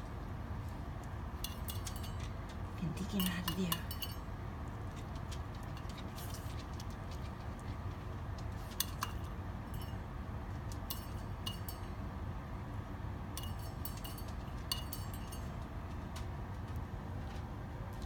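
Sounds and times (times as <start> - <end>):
low background rumble: 0.0 - 18.0
dish clinking: 1.4 - 2.4, 3.0 - 4.3, 8.7 - 10.0, 10.9 - 12.0, 13.4 - 15.6.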